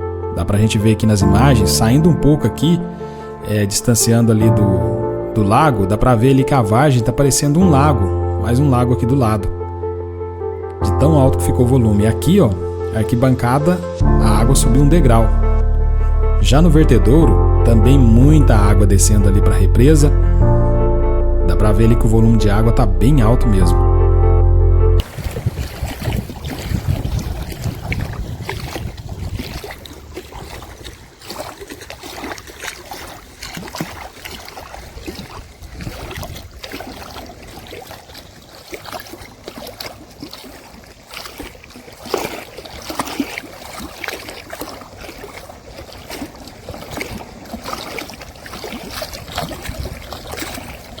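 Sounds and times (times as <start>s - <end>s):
floodwater rushing: 0.0s - 9.8s, 10.8s - 20.4s, 25.0s - 51.0s
wind buffeting microphone: 25.0s - 31.7s, 34.7s - 38.4s, 45.4s - 51.0s.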